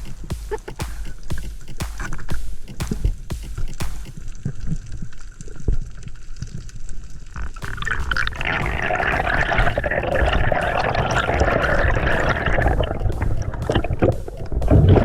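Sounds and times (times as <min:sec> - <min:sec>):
water bubbling and rushing: 0:07.6 - 0:15.0.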